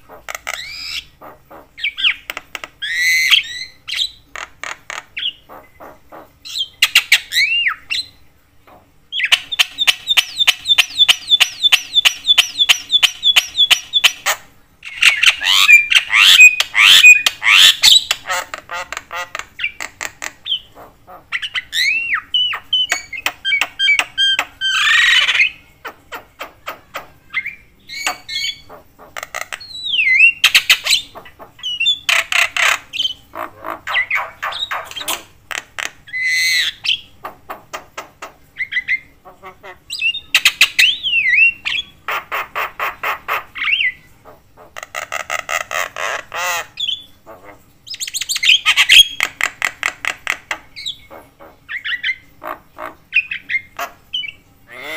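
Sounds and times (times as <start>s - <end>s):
myna calling: 48.4s - 54.9s.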